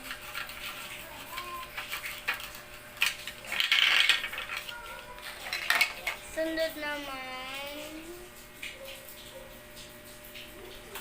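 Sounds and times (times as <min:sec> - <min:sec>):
toy dishes rattling: 0:00.0 - 0:07.1
toy dishes clicking and clattering: 0:00.0 - 0:07.7.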